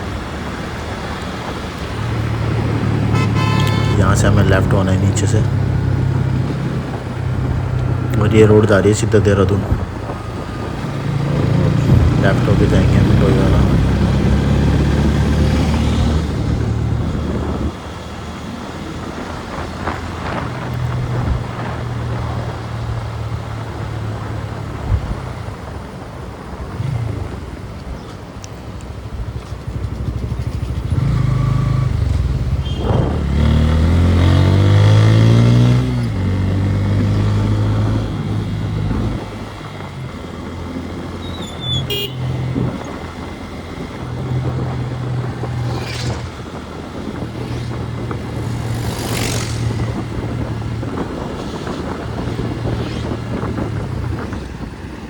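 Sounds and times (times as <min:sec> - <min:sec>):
motorcycle engine accelerating: 0:09.7 - 0:25.2, 0:29.0 - 0:55.0.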